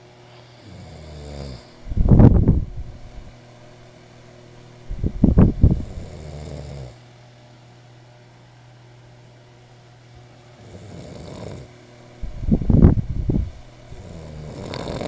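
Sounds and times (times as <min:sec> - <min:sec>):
man snoring: 0:00.4 - 0:01.8, 0:05.6 - 0:07.0, 0:10.6 - 0:11.7, 0:13.9 - 0:15.0.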